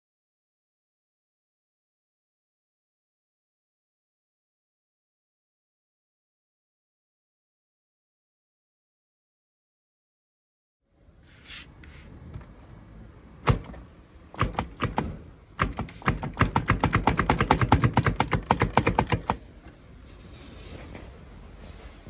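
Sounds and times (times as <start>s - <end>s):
loud knocks: 13.4s - 19.4s
fast sharp taps: 14.4s - 19.4s.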